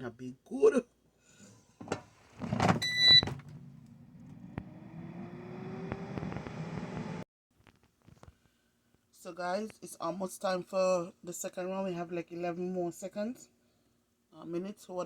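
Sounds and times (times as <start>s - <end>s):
air fryer fan hum: 2.6s - 7.2s
short beep: 2.8s - 3.3s.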